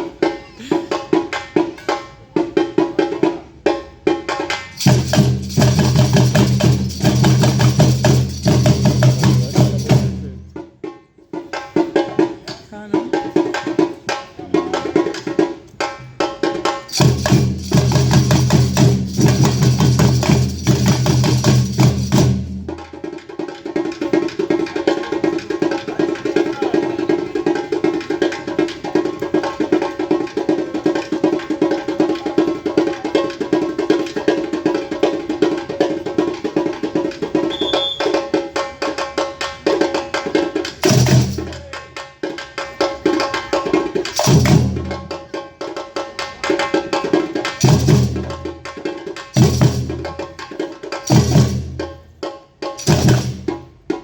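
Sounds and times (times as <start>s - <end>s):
fast percussion: 0.0s - 54.0s.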